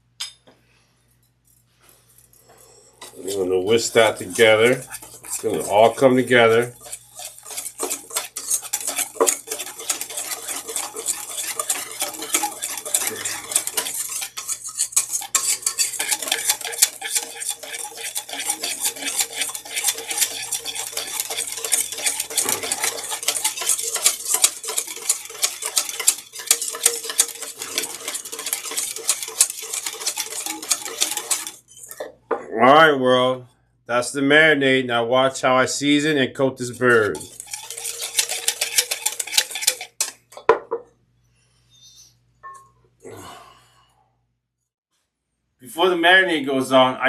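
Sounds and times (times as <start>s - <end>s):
whisk beating liquid in bowl: 3.0s - 32.1s, 36.6s - 40.4s.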